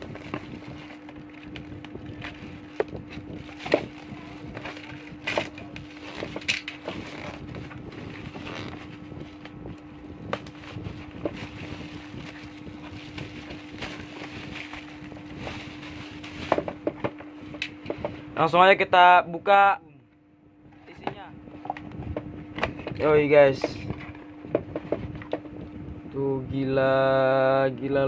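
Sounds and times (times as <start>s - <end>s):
packaging rustling: 0.0s - 16.9s
steady low hum: 0.0s - 28.0s.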